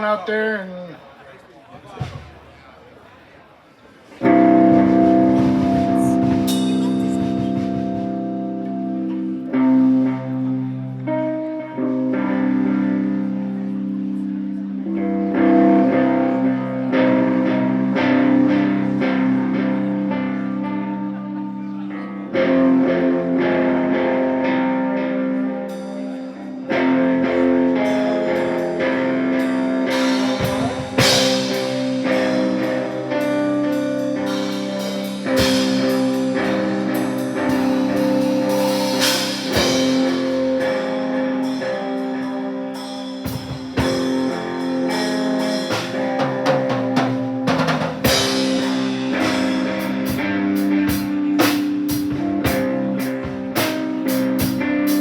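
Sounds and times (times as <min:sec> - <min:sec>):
drum kit: 0:01.8 - 0:02.8, 0:04.2 - 0:10.5, 0:25.6 - 0:55.0
electric guitar ringing chords: 0:04.2 - 0:55.0.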